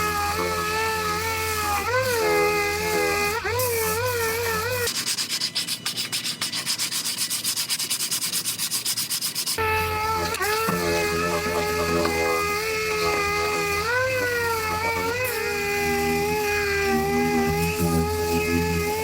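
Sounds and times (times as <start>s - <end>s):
power sander on sheet metal: 0.0s - 19.0s.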